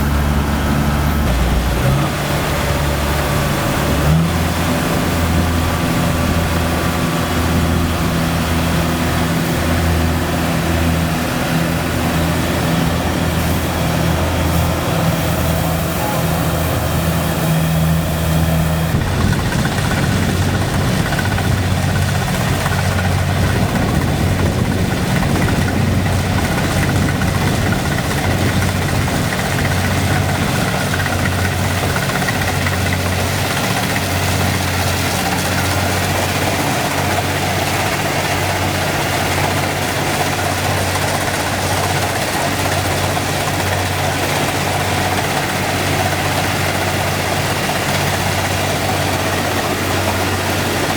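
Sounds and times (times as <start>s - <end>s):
combine harvester diesel engine: 0.0s - 50.9s
mechanical clatter: 18.0s - 50.9s.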